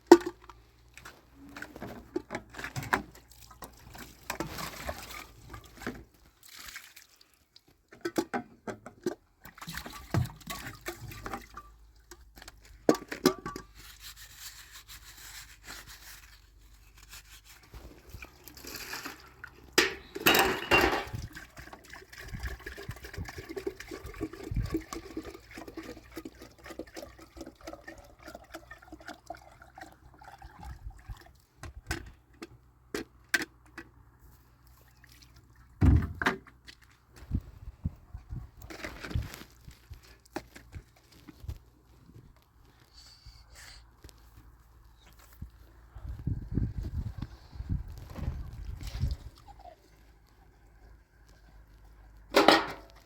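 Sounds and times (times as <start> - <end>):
knocks and clatters of handling: 0.0 - 6.1, 7.8 - 13.8, 17.7 - 21.8, 51.3 - 53.0
water pouring and splashing: 0.9 - 8.4, 9.0 - 31.6, 34.7 - 37.5.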